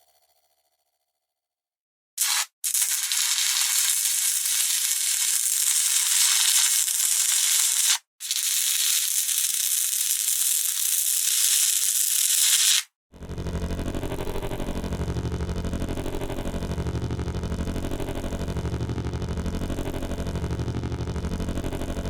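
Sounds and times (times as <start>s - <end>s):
electric sparks crackling: 2.2s - 12.9s.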